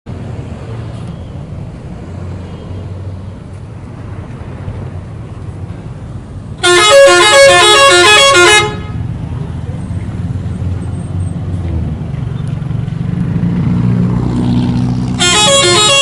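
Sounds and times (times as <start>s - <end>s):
vehicle rumble: 0.1s - 16.0s
bus horn playing multi-note tune: 6.6s - 9.1s, 15.1s - 16.0s.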